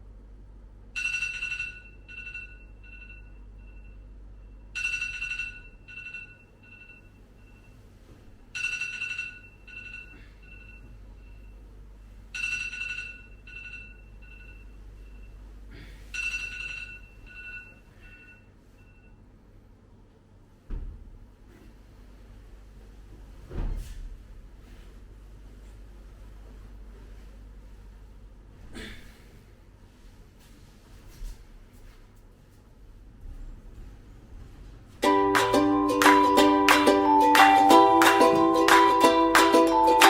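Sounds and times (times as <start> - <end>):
low steady hum: 0.0 - 40.0.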